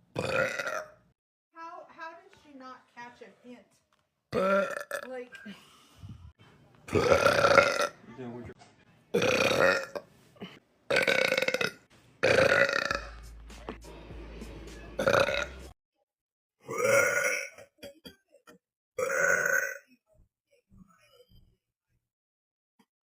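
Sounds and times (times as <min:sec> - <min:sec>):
woman burping: 0:00.1 - 0:01.0, 0:04.3 - 0:05.6, 0:06.9 - 0:08.0, 0:09.1 - 0:13.2, 0:15.0 - 0:15.5, 0:16.6 - 0:19.9.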